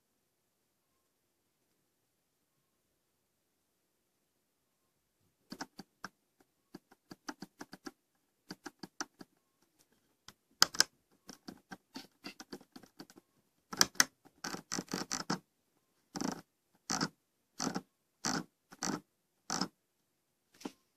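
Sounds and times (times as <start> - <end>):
computer mouse clicking: 5.5 - 15.4, 16.1 - 19.7.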